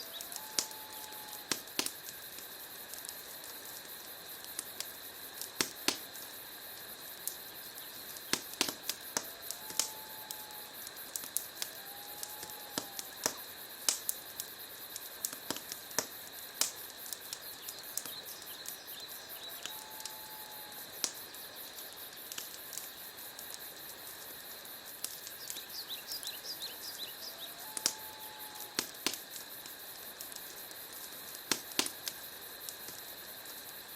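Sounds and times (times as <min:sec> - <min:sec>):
steady fire hiss: 0:00.0 - 0:33.9
wood fire crackling and popping: 0:00.0 - 0:33.9.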